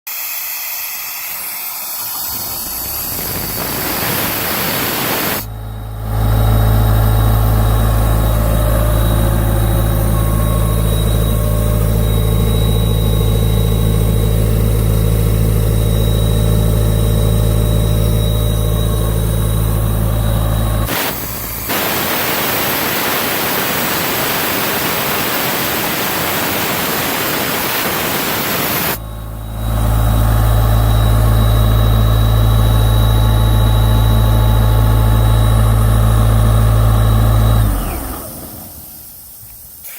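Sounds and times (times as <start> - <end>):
rising hiss: 0.1 - 5.6
diesel engine idling: 5.4 - 22.3, 29.0 - 39.1.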